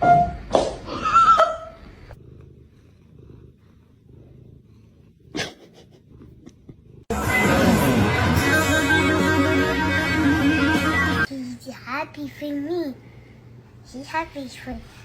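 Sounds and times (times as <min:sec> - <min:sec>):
cat purring: 0:01.8 - 0:07.3
loud guitar music: 0:07.1 - 0:11.3.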